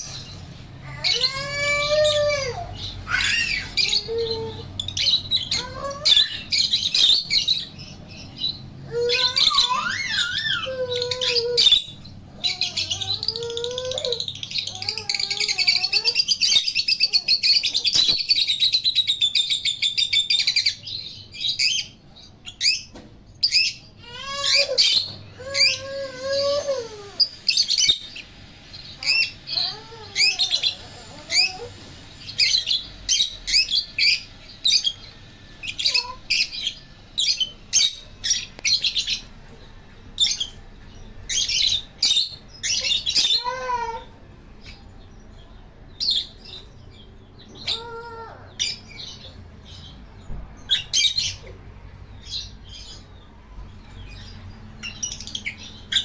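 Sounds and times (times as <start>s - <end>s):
lower wavering bird calls: 0.0s - 18.2s, 24.0s - 45.4s
birds chirping: 0.0s - 56.0s.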